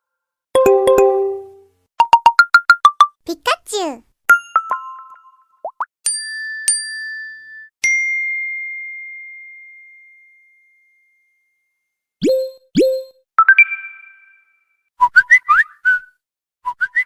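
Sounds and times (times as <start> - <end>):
phone notification chimes: 0.6 - 2.4
rising notification tone: 0.6 - 3.1.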